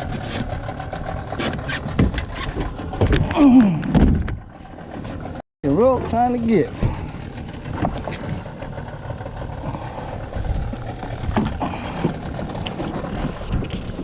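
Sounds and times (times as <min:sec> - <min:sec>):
wind buffeting microphone: 0:09.5 - 0:14.0.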